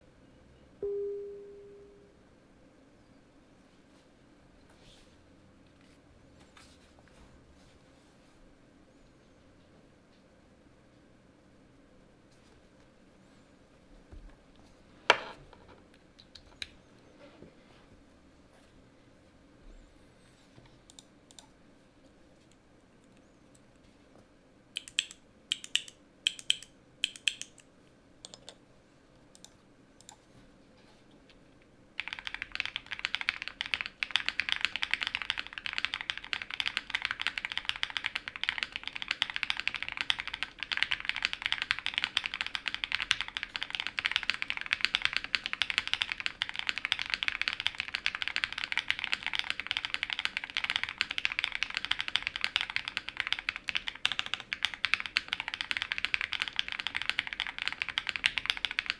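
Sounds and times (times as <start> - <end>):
fast typing on keyboard: 24.8 - 27.6, 32.0 - 58.9
keyboard key clicks: 24.8 - 28.6.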